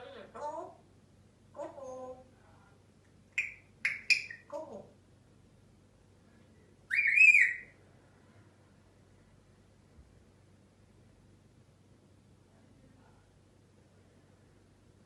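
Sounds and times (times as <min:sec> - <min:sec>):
bird chirping: 0:03.3 - 0:04.6, 0:06.9 - 0:07.8
bird whistle rising and falling: 0:06.9 - 0:07.8.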